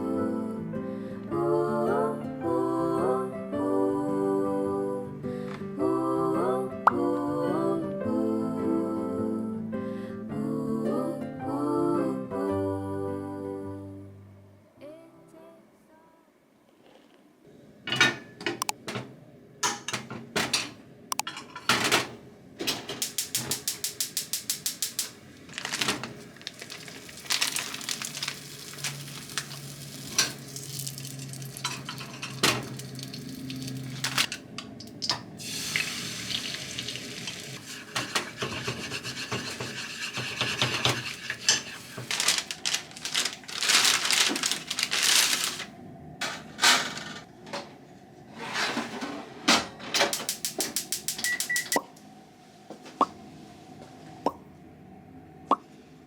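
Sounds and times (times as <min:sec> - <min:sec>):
dishes and utensils clinking: 0:17.9 - 0:22.1, 0:31.5 - 0:35.3, 0:37.6 - 0:43.3
hiss: 0:23.0 - 0:25.2.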